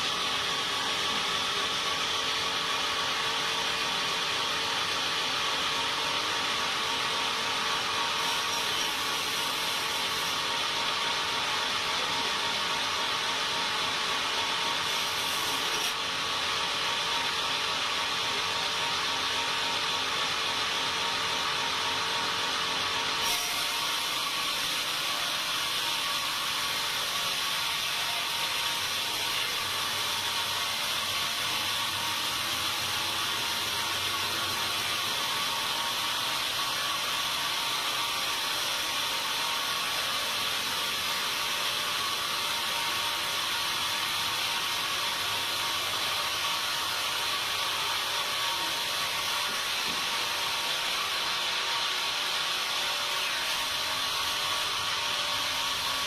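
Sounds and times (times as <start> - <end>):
sawmill saw cutting timber: 0.0 - 56.0.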